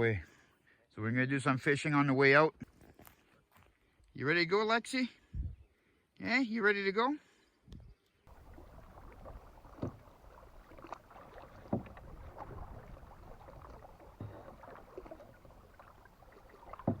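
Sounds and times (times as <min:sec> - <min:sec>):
paddle strokes with knocks: 0:08.3 - 0:17.0
water washing: 0:08.3 - 0:17.0.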